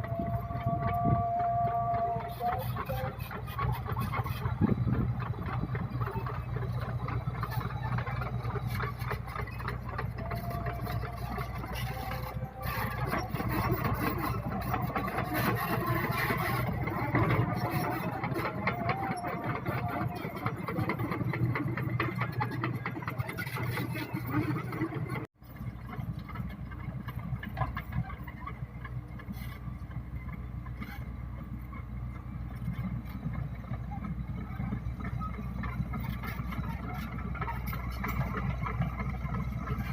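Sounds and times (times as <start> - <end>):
diesel engine humming: 0.0 - 39.9.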